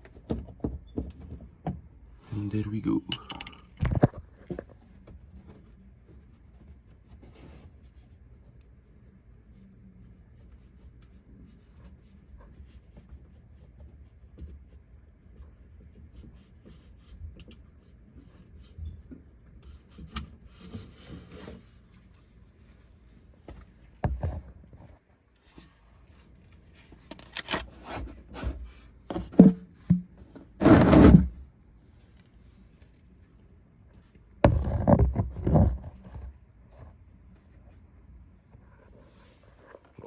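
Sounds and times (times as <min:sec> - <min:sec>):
rubbing and scraping: 0:19.7 - 0:22.8, 0:27.5 - 0:31.4.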